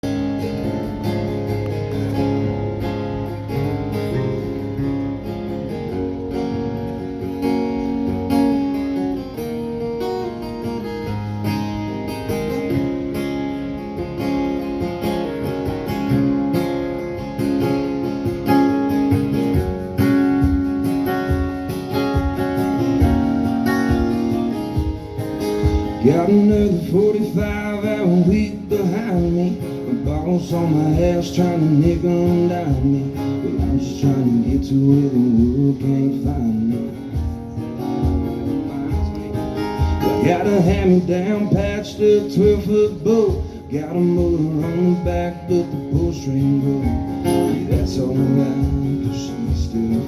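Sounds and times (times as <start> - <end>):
live country band playing: 0.0 - 50.0
strummed acoustic guitar: 0.0 - 50.0
vocals singing: 25.9 - 37.0, 40.0 - 50.0.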